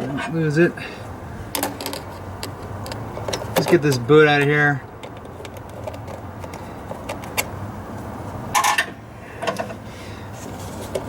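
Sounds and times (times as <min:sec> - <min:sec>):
small clicks and rubbing: 0:01.5 - 0:04.1, 0:04.9 - 0:08.7.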